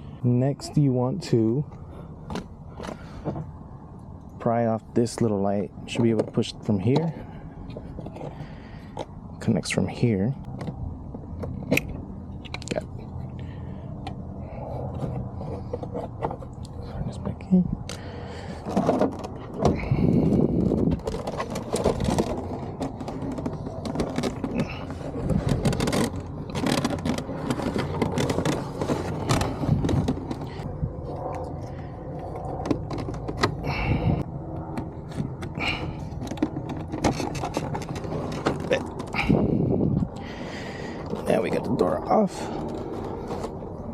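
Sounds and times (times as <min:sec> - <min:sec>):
low steady rumble: 0:00.0 - 0:43.9
plastic panel clicks and rattles: 0:20.6 - 0:30.6, 0:36.2 - 0:39.2.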